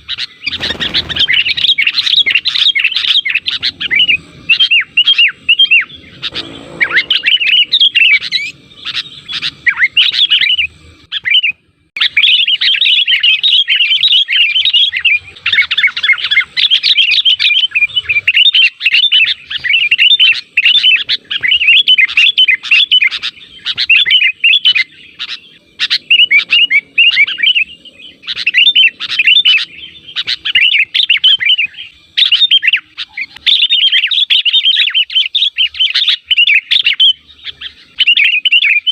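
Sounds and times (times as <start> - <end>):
bulbul bubbly chirping: 0.4 - 11.4.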